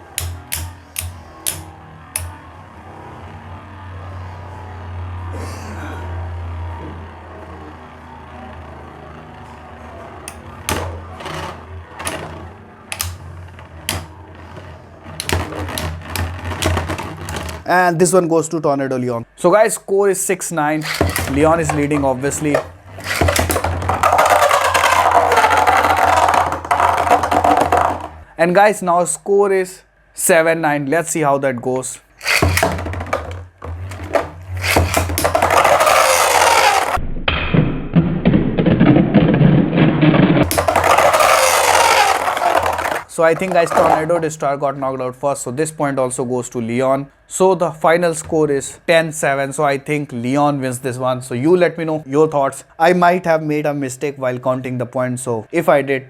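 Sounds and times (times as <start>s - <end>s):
spinning tops clicking as they collide: 0.0s - 2.4s, 10.3s - 17.7s, 20.8s - 28.2s, 32.2s - 37.0s, 40.4s - 44.1s
spinning tops whirring: 0.0s - 2.4s, 10.3s - 17.7s, 20.8s - 28.3s, 32.2s - 37.0s, 40.4s - 44.2s.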